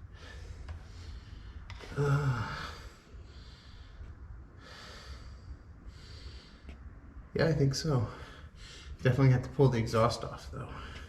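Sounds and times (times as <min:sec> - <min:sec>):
low background hum: 0:00.0 - 0:11.0
man grunting: 0:01.9 - 0:02.8.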